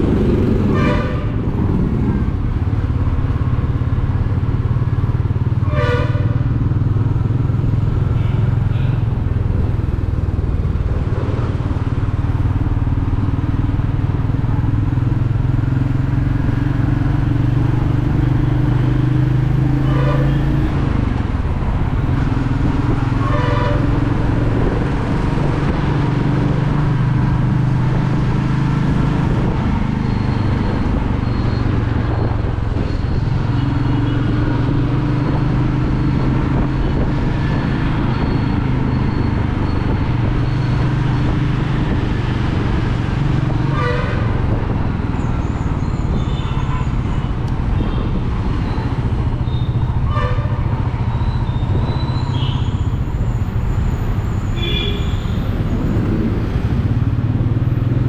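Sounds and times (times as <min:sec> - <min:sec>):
wind and road noise: 0:00.0 - 0:58.0
vehicle horn toots: 0:00.6 - 0:01.4, 0:05.6 - 0:06.4, 0:08.2 - 0:09.0, 0:19.8 - 0:20.7, 0:23.2 - 0:24.0, 0:43.7 - 0:44.4, 0:50.0 - 0:50.8, 0:54.5 - 0:55.4.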